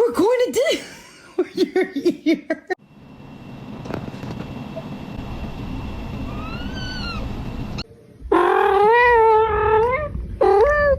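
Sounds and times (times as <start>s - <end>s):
cat meowing: 8.3s - 10.9s.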